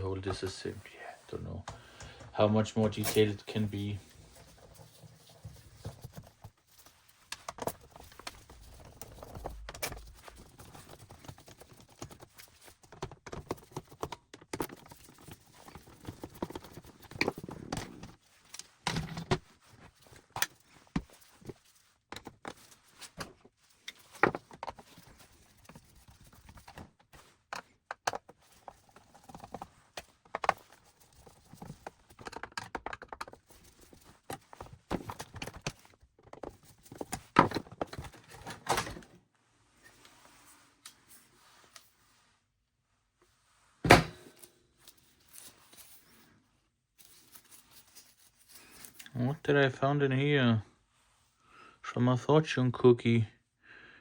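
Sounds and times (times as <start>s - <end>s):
plastic parts clicking and knocking: 3.0s - 39.1s.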